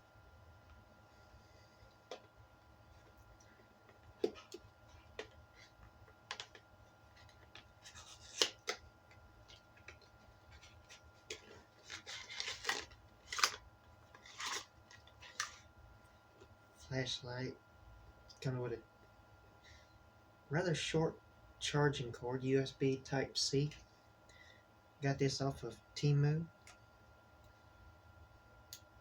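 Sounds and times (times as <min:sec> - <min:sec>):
packaging rustling: 0:09.4 - 0:15.7.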